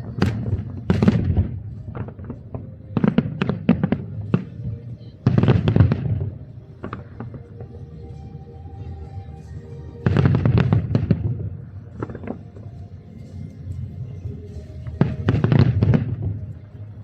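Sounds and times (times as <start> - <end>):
fireworks bangs and crackle: 0.0 - 7.8, 10.0 - 12.6, 14.8 - 16.6.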